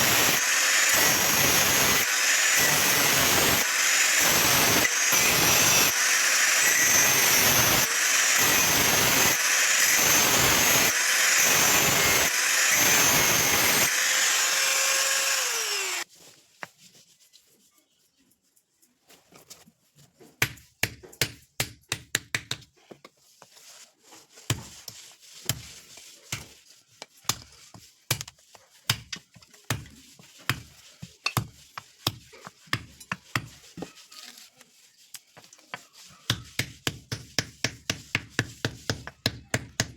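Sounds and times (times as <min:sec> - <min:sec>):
electric grinder on steel: 0:00.0 - 0:16.1.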